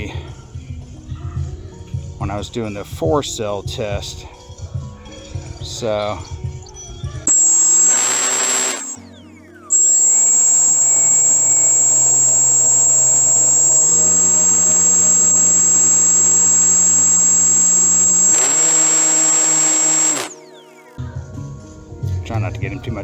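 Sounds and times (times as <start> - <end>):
electric motor and propeller whine: 7.3 - 9.0, 9.7 - 20.4.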